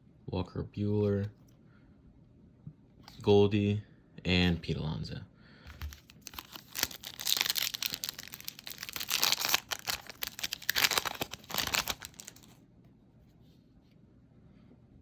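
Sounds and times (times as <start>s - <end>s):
foil wrapper tearing and crinkling: 5.7s - 12.6s.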